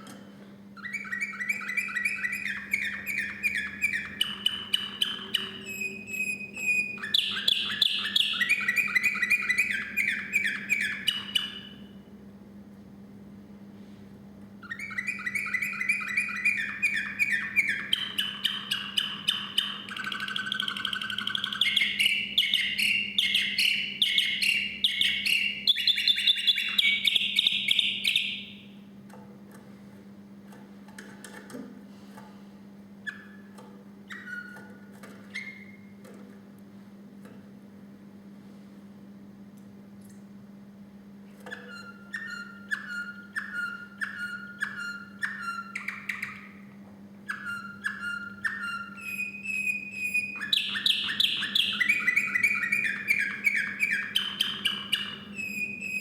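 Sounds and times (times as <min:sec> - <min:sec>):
canary singing trills: 0:00.8 - 0:12.1, 0:14.6 - 0:28.8, 0:33.0 - 0:36.0, 0:41.5 - 0:56.0.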